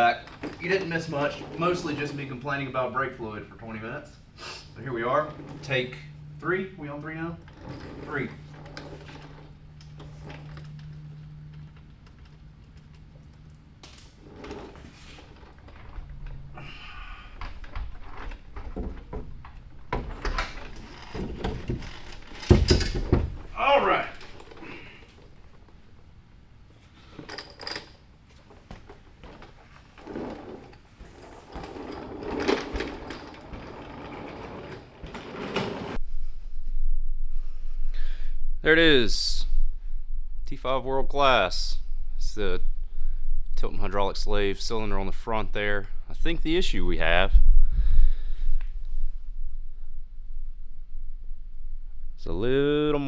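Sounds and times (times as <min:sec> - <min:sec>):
metal clattering and scraping: 0:29.2 - 0:36.0.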